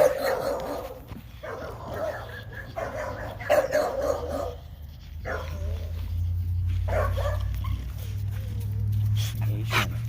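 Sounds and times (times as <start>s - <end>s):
dog barking: 0.0s - 6.0s, 6.8s - 8.0s.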